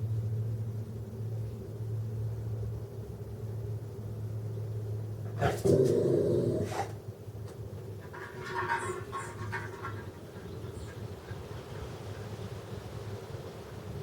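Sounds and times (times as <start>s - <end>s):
dog calling: 7.9s - 12.4s.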